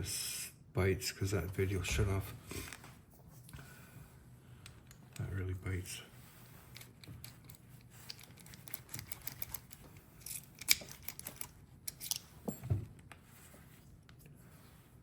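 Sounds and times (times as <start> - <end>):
small metal parts clicking: 6.8 - 12.3.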